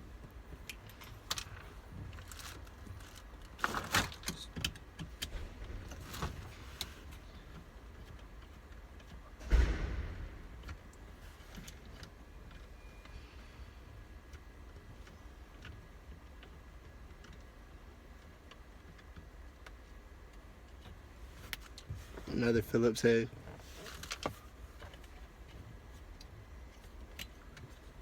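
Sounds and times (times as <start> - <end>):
loud knock: 9.4 - 10.7.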